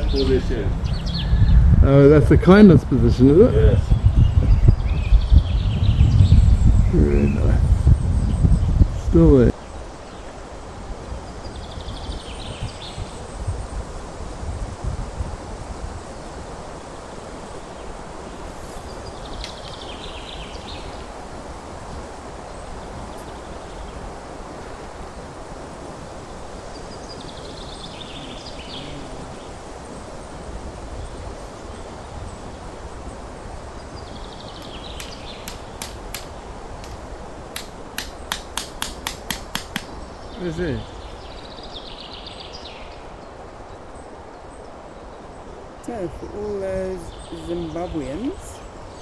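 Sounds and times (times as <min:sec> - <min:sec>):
small bird chattering: 0:00.0 - 0:09.5, 0:18.4 - 0:41.4
outdoor background noise: 0:00.0 - 0:49.0
sharp clicks: 0:33.6 - 0:40.8.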